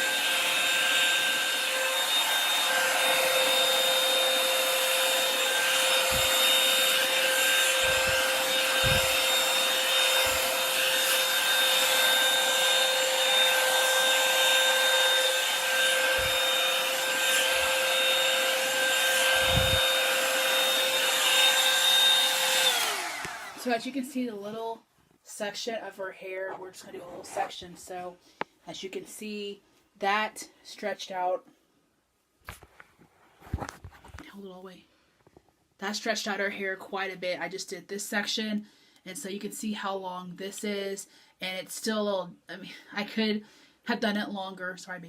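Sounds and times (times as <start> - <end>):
hair dryer running: 0.0 - 24.7.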